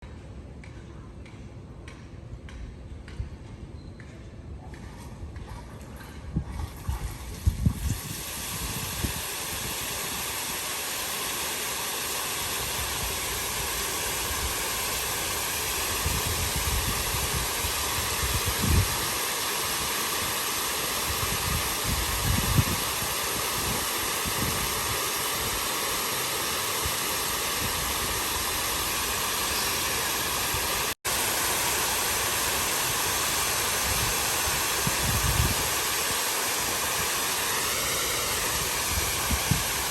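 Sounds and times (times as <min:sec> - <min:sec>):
water fountain spray hissing: 0:06.6 - 0:39.9.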